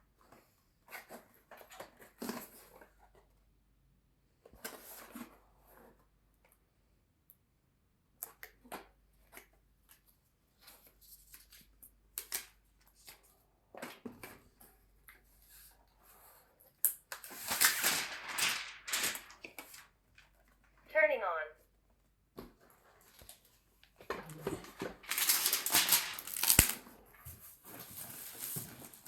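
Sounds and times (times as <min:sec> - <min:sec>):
rustling of objects being handled: 0:14.2 - 0:20.8, 0:22.4 - 0:29.0
objects clicking: 0:24.2 - 0:26.8.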